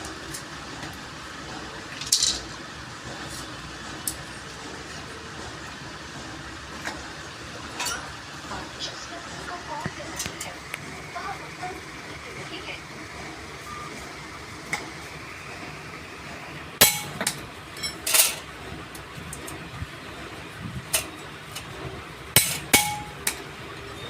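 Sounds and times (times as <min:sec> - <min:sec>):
hammer striking metal: 0:16.8 - 0:18.4, 0:22.4 - 0:23.5.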